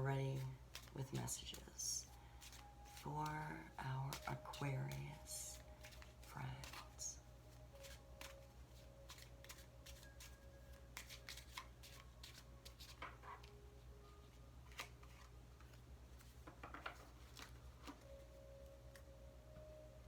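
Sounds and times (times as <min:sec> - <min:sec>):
low steady hum: 0:00.0 - 0:20.0
cards shuffled by hand: 0:00.4 - 0:03.4, 0:04.1 - 0:07.1, 0:07.8 - 0:13.6, 0:14.6 - 0:18.2.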